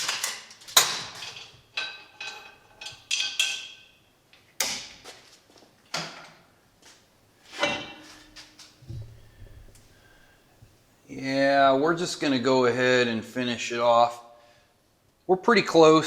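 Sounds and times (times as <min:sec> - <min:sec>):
metal-on-metal clanks: 0:00.0 - 0:04.0, 0:07.5 - 0:09.8.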